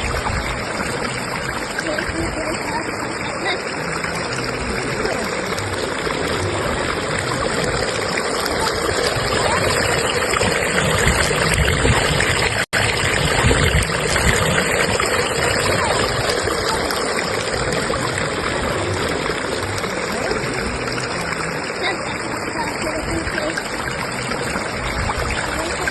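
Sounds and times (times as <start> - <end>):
stream rushing: 0.0 - 25.9.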